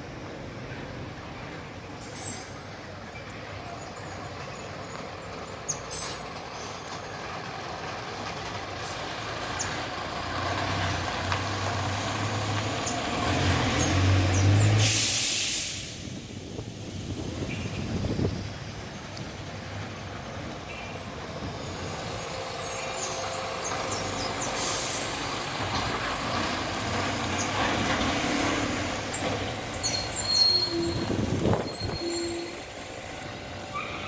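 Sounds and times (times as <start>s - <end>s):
heavy vehicle engine hum: 0.0s - 34.0s
street traffic: 0.0s - 34.0s
loud air brake hiss: 14.6s - 17.8s, 24.4s - 25.4s.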